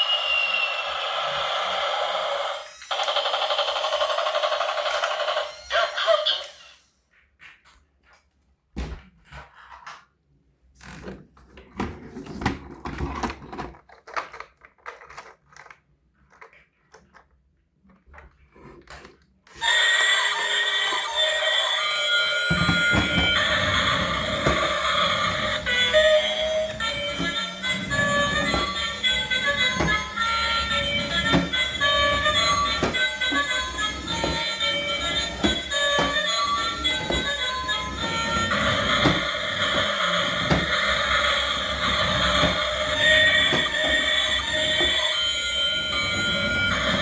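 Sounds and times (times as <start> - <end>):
toys clicking and knocking: 0.0 - 6.6, 11.0 - 47.0
toy electronic ringing: 0.0 - 6.8, 19.6 - 47.0.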